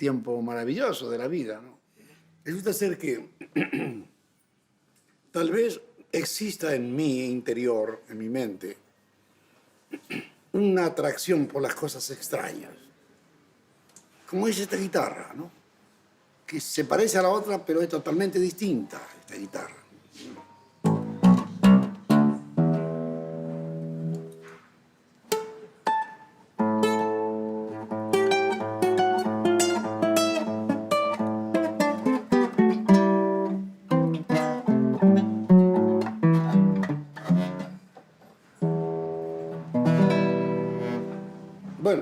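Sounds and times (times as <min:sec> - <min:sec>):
guitar playing: 0:20.8 - 0:24.6, 0:25.3 - 0:37.9, 0:38.6 - 0:41.8.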